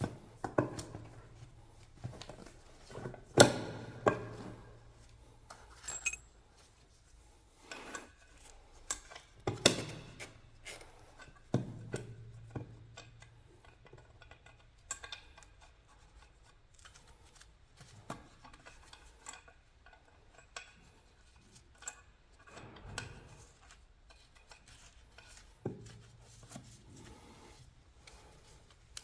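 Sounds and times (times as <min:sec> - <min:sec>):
clicks and light knocks on metal: 0:11.2 - 0:16.6, 0:18.0 - 0:26.0.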